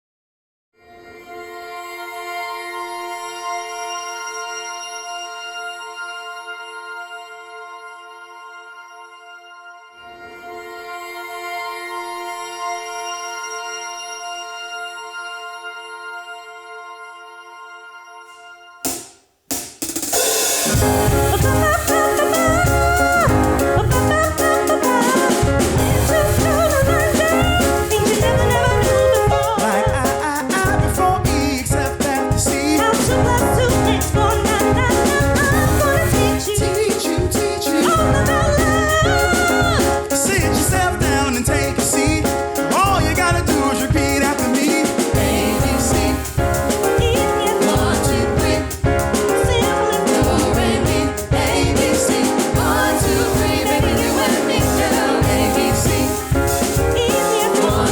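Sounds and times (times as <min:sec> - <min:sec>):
band accompaniment: 0:18.9 - 0:57.9
drum kit: 0:18.9 - 0:57.9
vocal ensemble singing: 0:20.3 - 0:57.9.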